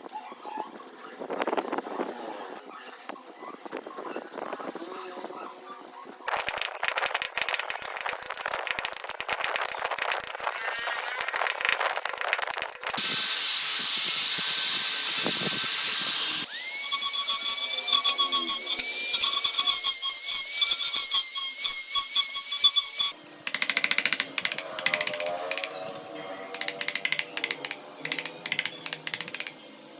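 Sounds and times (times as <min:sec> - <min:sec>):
high hiss: 0:13.0 - 0:16.5
power tool whining with pulsing: 0:13.0 - 0:23.2.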